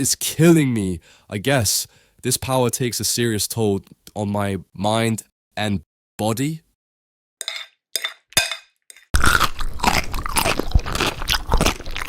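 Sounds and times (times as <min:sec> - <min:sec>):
continuous crunching and crackling: 0:09.2 - 0:12.0.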